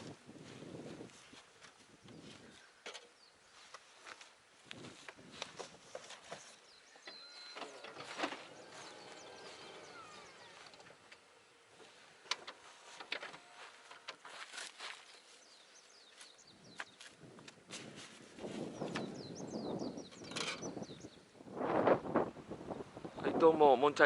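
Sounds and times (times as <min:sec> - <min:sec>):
songbird whistling: 0:06.8 - 0:08.0.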